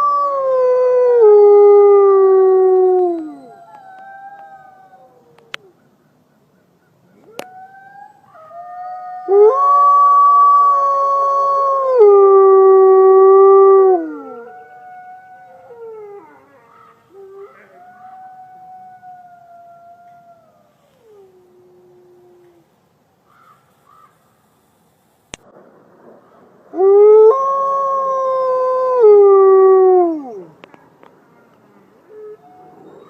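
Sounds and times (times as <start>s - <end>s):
wolves howling: 0.0s - 5.8s, 7.2s - 22.6s, 26.7s - 30.7s, 32.0s - 33.0s.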